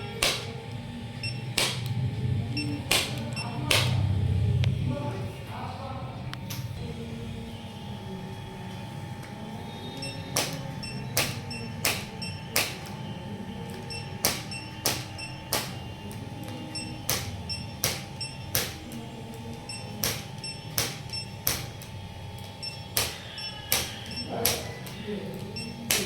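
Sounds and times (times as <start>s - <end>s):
faint hum: 0.0s - 26.0s.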